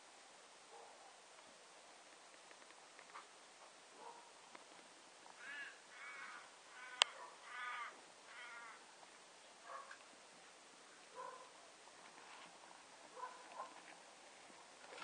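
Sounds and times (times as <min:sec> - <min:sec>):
harsh animal calls: 0:05.4 - 0:08.8.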